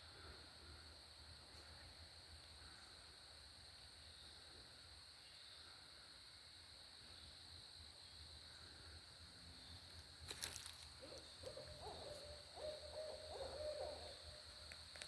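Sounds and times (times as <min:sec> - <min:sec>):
owl hooting: 0:11.0 - 0:14.6.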